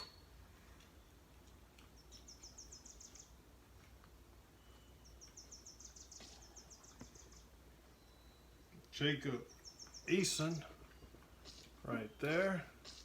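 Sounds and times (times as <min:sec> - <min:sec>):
small animal chirping trills: 0:01.9 - 0:03.4.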